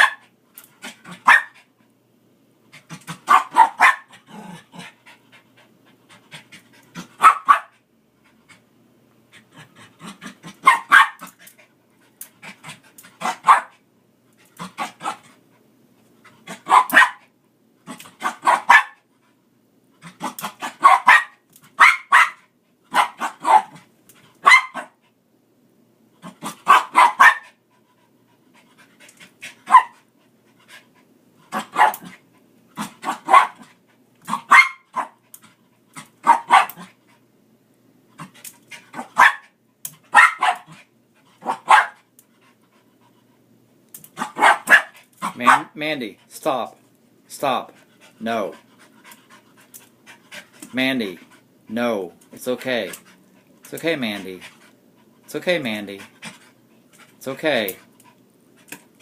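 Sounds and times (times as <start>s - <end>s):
dog barking in short bursts: 1.2s - 1.6s, 3.3s - 4.1s, 7.2s - 7.7s, 10.6s - 11.3s, 13.2s - 13.8s, 16.5s - 17.3s, 18.2s - 19.0s, 20.2s - 23.8s, 24.4s - 25.0s, 26.6s - 27.6s, 29.7s - 30.0s, 31.5s - 32.1s, 33.0s - 33.6s, 34.3s - 35.2s, 36.2s - 36.9s, 39.0s - 39.5s, 40.1s - 40.7s, 41.4s - 42.0s, 44.2s - 45.7s
dog breathing hard: 47.7s - 51.6s.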